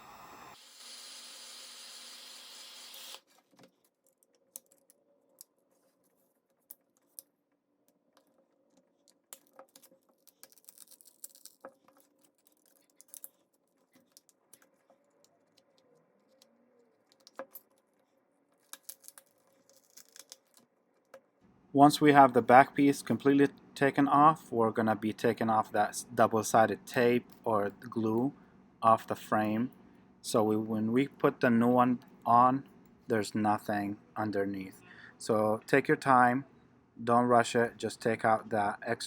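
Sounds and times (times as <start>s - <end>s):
heat gun blowing: 0.0s - 3.2s.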